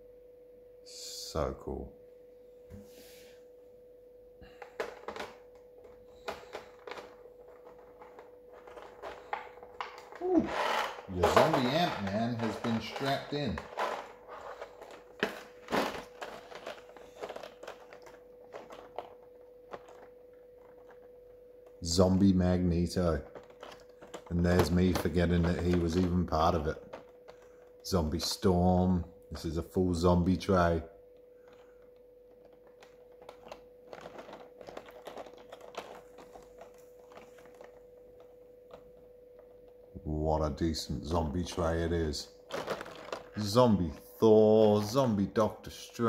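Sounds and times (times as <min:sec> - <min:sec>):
faint steady hum: 0:00.0 - 0:46.0
small clicks and rustles: 0:04.4 - 0:21.8, 0:23.2 - 0:26.1, 0:26.8 - 0:28.0, 0:31.1 - 0:40.0, 0:42.4 - 0:43.6
plastic packaging crackling: 0:04.4 - 0:28.5, 0:31.2 - 0:40.0, 0:41.0 - 0:46.0.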